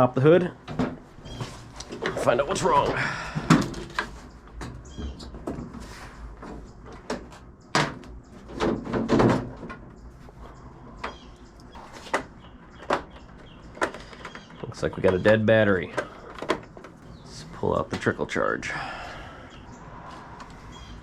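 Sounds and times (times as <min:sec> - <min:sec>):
mower hood knocks and clunks: 0:00.6 - 0:04.0, 0:06.4 - 0:09.9.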